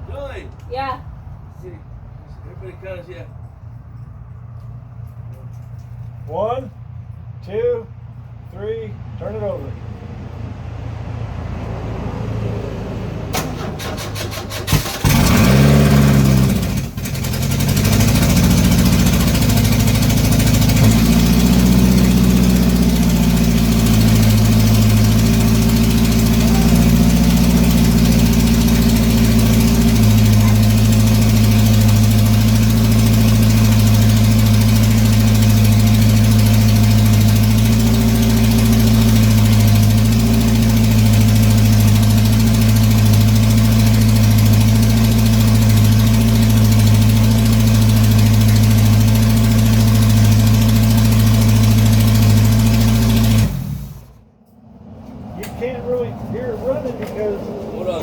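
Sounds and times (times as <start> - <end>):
engine running at high speed: 9.4 - 58.0
starter cranking engine: 13.3 - 54.2.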